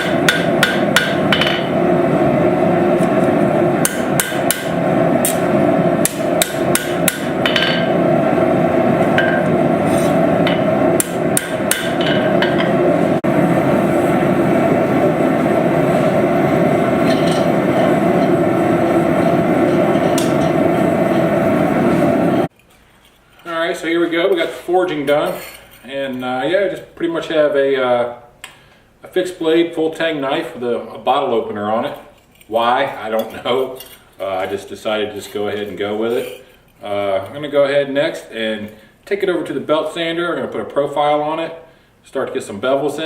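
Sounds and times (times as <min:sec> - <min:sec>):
hammer blows on hot steel: 0:00.0 - 0:02.2, 0:02.9 - 0:22.5
loud steady rushing noise: 0:00.0 - 0:22.5.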